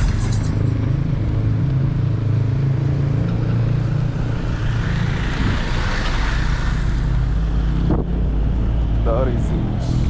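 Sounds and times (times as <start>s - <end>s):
low traffic rumble: 0.0s - 10.0s
vehicle passing close: 3.6s - 8.5s.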